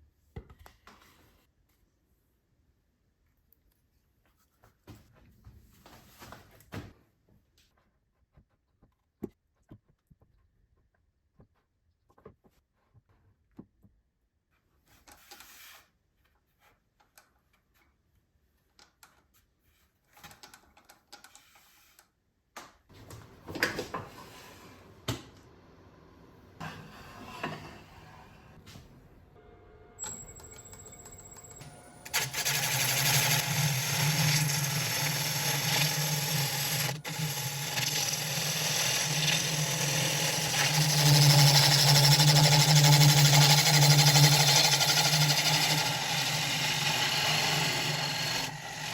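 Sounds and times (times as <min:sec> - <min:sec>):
wood lathe humming: 0:30.0 - 0:48.9.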